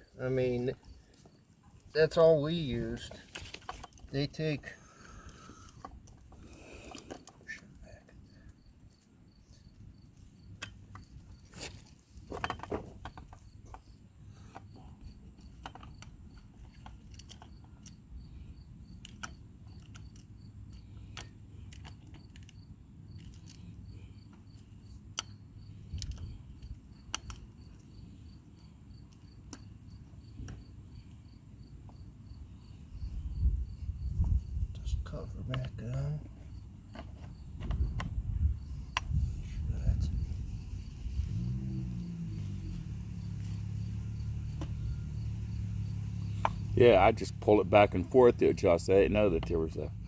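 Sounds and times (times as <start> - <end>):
cricket chirping: 0.0 - 50.0
tools handling metal parts: 10.6 - 13.9.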